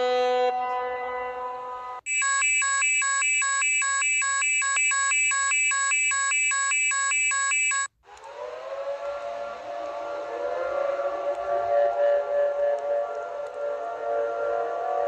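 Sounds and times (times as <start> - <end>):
electronic alarm tone alternating pitch: 2.1 - 7.9
siren winding up: 2.1 - 8.3.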